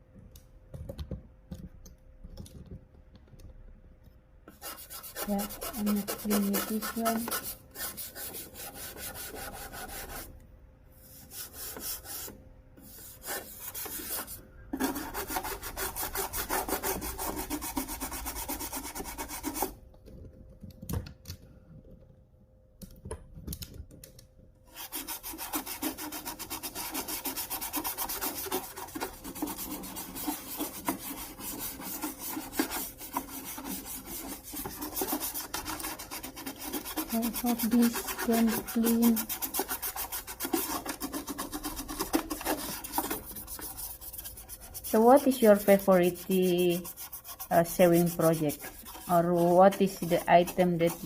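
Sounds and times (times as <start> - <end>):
scrubbing on plastic casing: 25.0 - 51.0.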